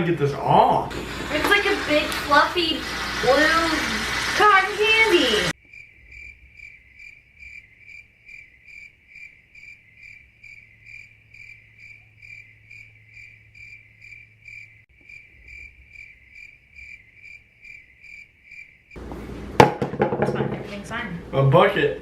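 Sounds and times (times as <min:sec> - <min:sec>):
cricket chirping: 0:05.5 - 0:19.0.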